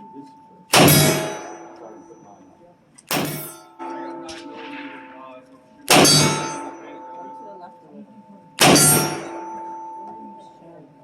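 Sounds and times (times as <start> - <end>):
steel target ringing: 0.0 - 2.4, 3.1 - 7.8, 8.6 - 10.6
gunshots: 0.7 - 1.6, 3.1 - 3.6, 4.2 - 6.9, 8.6 - 9.4.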